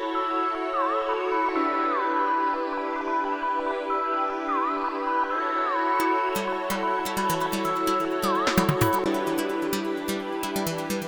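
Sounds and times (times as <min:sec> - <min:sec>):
synthesizer chords: 0:06.3 - 0:11.0.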